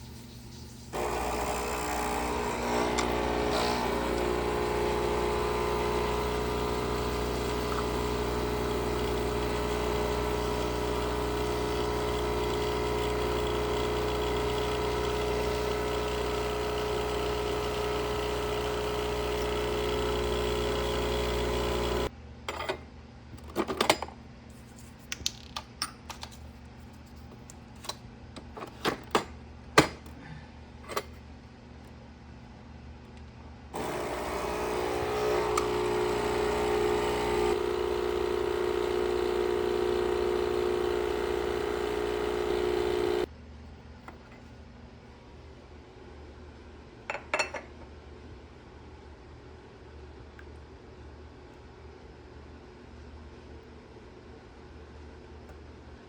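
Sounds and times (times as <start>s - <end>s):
electric motor humming: 1.0s - 22.1s, 33.8s - 43.3s.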